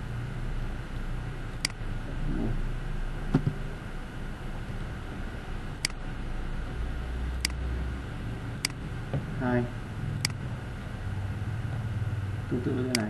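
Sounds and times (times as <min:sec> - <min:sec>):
low microphone hum: 0:00.0 - 0:13.0
computer mouse clicks: 0:01.6 - 0:01.8, 0:08.6 - 0:08.8.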